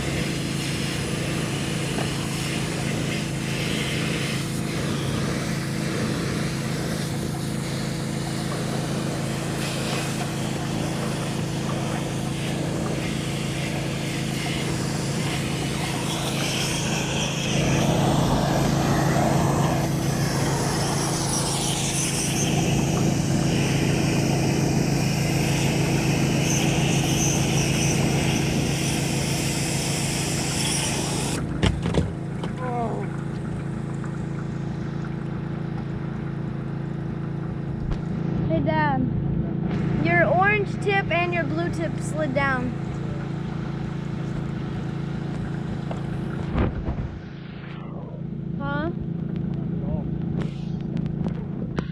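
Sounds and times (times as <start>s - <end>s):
water spraying onto metal roof: 0.0s - 38.2s
pressure washer engine running: 0.0s - 51.9s.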